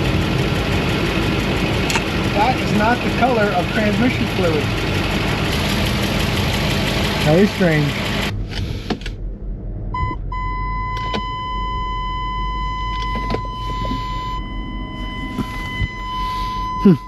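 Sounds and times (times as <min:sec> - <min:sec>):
engine idling: 0:00.0 - 0:08.9
continuous high-pitched alarm tone: 0:10.0 - 0:17.0
short warning beep: 0:10.0 - 0:17.0.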